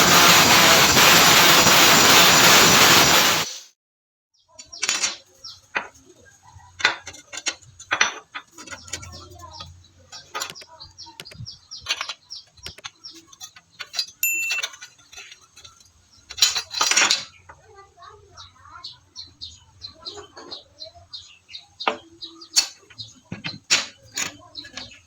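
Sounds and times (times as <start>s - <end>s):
metal pieces clinking: 13.4s - 17.3s
metallic ring: 14.0s - 15.0s.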